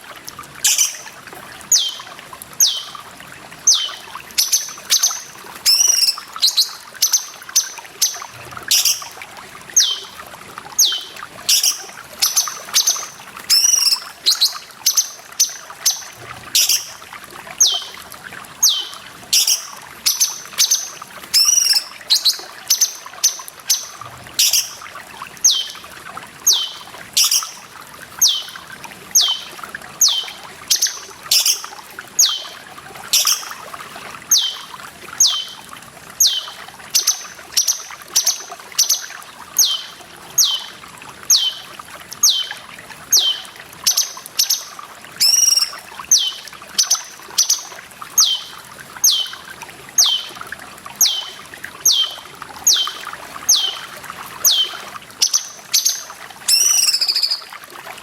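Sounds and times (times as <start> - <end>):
running water trickling: 0.0 - 58.0
bird calling high notes: 10.8 - 15.0, 21.4 - 22.4, 45.2 - 47.0, 56.5 - 57.5.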